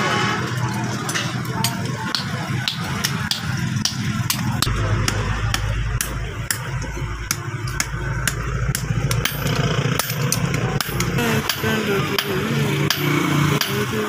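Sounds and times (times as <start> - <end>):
low machine hum: 3.6 - 12.8.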